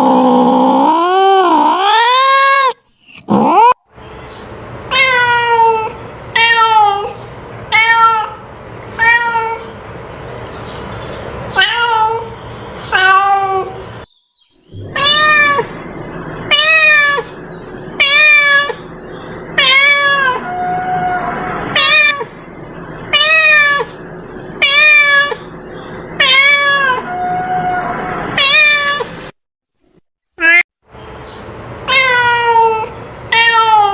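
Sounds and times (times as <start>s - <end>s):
cat meowing: 4.9s - 8.4s, 9.0s - 9.8s, 11.6s - 13.8s, 14.8s - 15.8s, 16.5s - 17.3s, 18.0s - 18.9s, 19.6s - 22.4s, 23.1s - 24.0s, 24.6s - 25.5s, 26.2s - 29.1s, 30.4s - 30.6s, 31.9s - 33.9s.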